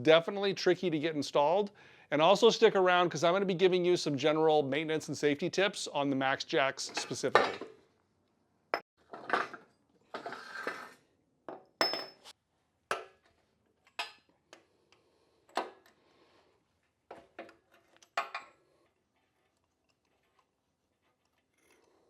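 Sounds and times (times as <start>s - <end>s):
objects scraping: 9.0s - 11.1s.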